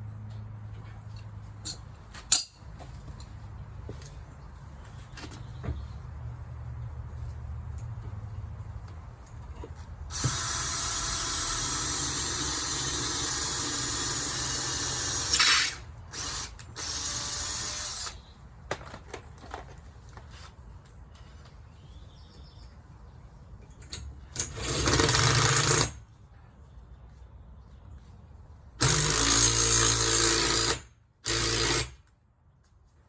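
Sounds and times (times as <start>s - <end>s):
power tool running: 10.1s - 18.2s.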